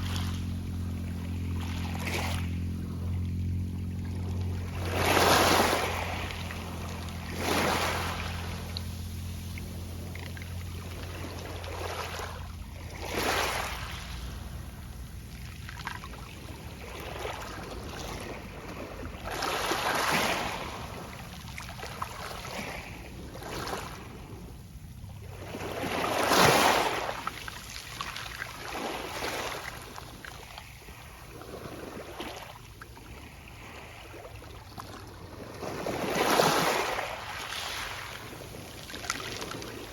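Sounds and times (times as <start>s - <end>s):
low steady hum: 0.0s - 26.2s
waves breaking on pebble beach: 4.6s - 24.5s, 25.2s - 39.9s.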